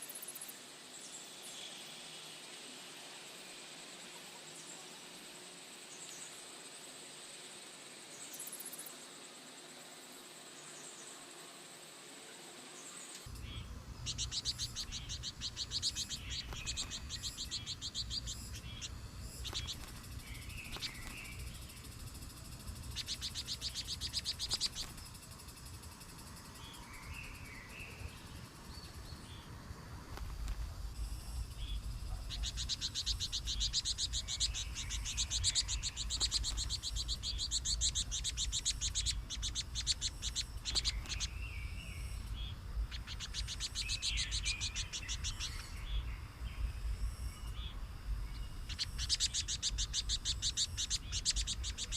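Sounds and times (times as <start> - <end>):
low steady hum: 11.6 - 51.9
birds chirping in trills: 12.6 - 30.0, 30.9 - 51.9.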